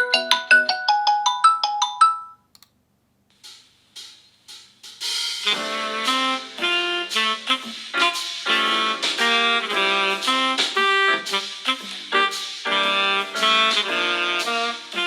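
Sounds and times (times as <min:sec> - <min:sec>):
phone ringtone melody: 0:00.0 - 0:02.4.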